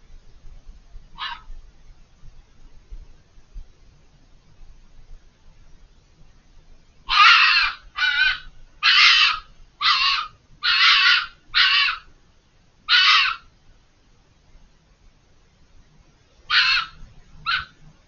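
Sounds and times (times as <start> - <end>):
fox screaming: 1.2 - 1.5, 7.1 - 12.1, 12.9 - 13.5, 16.5 - 17.8.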